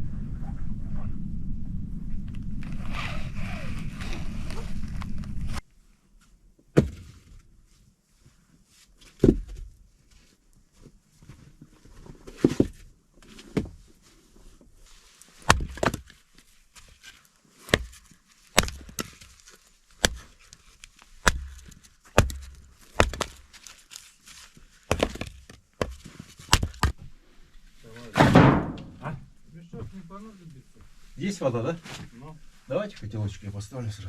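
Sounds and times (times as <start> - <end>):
wooden knocks with low thuds: 9.2 - 9.7, 21.2 - 23.5, 24.9 - 27.1, 28.2 - 29.1.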